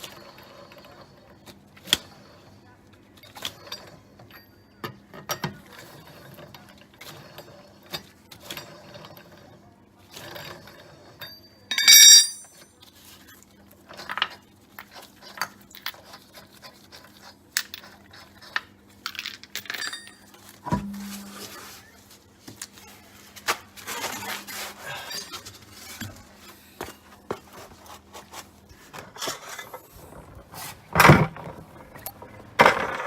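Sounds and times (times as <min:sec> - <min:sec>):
metallic ringing clang: 0:11.7 - 0:12.6, 0:19.8 - 0:21.5.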